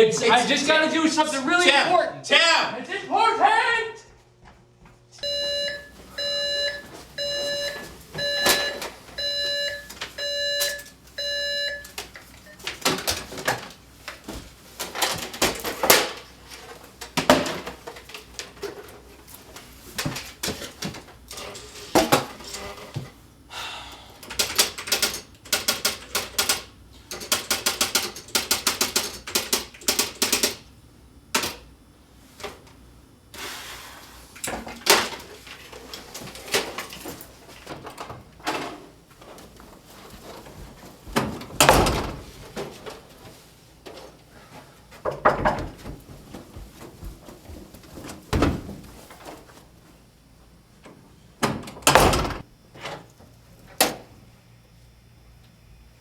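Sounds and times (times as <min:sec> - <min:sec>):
electronic alarm beeping: 0:05.2 - 0:12.7
typewriter keys clacking: 0:24.3 - 0:30.7.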